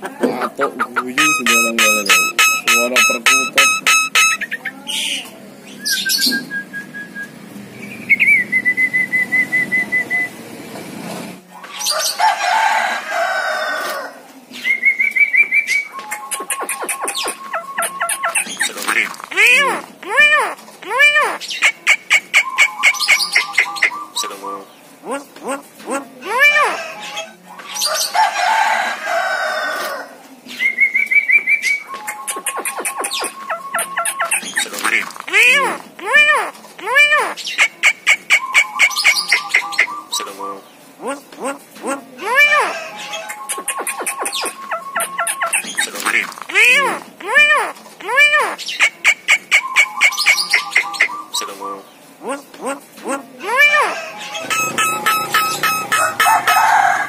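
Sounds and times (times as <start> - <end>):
harsh rasping bird call: 1.0 - 5.2, 53.6 - 57.0
bird whistling and trilling: 1.2 - 4.6, 5.8 - 10.3, 14.7 - 18.8, 21.4 - 24.4, 30.6 - 34.8, 37.4 - 40.3, 43.2 - 46.0, 48.6 - 51.5, 54.4 - 56.7
myna harsh crowing call: 26.3 - 30.2, 42.2 - 43.5, 53.4 - 57.0.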